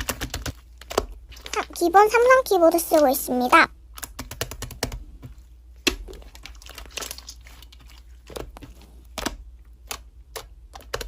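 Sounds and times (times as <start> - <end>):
slime crackling and squishing: 5.3 - 11.0.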